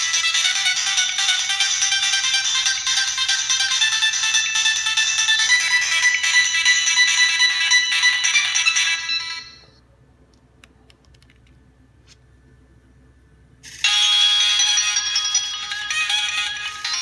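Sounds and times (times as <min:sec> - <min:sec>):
phone ringtone melody: 0:00.0 - 0:09.8, 0:13.8 - 0:17.0.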